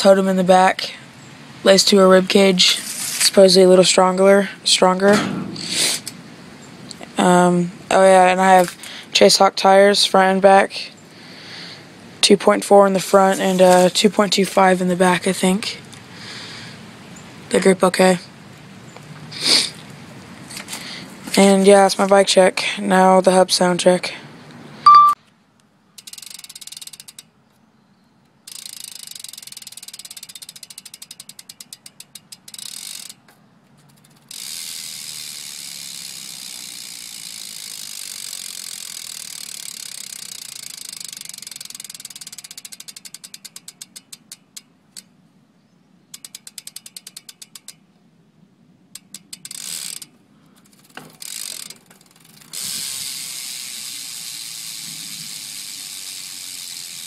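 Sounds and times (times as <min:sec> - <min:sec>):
bike hub ratcheting buzz: 0:26.0 - 0:27.4, 0:28.4 - 0:45.1, 0:46.0 - 0:47.9, 0:48.9 - 0:57.0.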